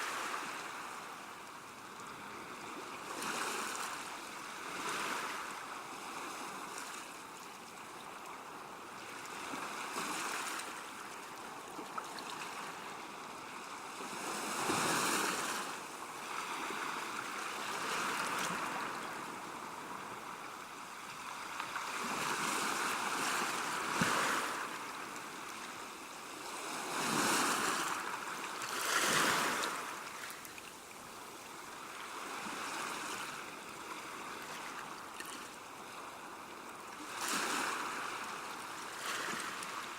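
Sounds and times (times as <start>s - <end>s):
sea waves washing onto shore: 8.3s - 39.9s.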